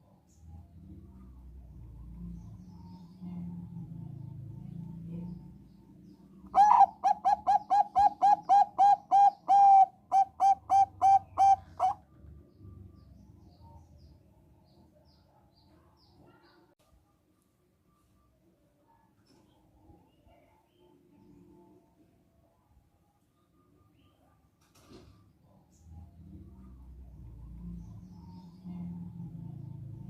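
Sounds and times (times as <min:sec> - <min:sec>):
dove cooing: 0:06.5 - 0:12.0.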